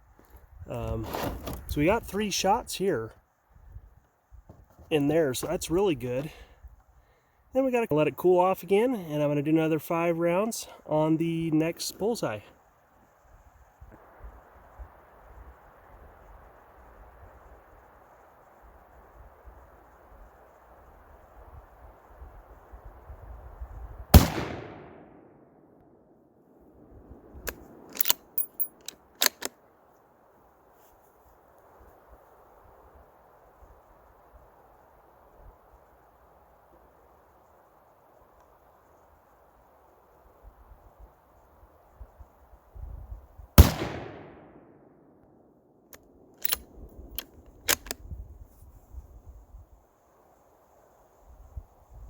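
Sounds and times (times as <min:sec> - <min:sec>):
rifle shot report: 0:04.9 - 0:06.5, 0:24.1 - 0:25.3, 0:43.6 - 0:44.8
rifle bolt metallic clicks: 0:27.4 - 0:29.6, 0:45.9 - 0:48.1.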